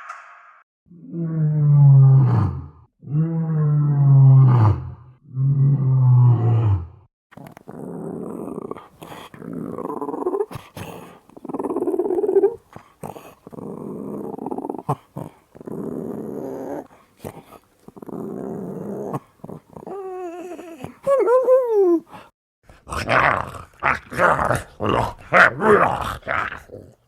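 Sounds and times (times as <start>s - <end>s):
rasping creature growls: 1.0s - 21.1s, 22.7s - 27.0s.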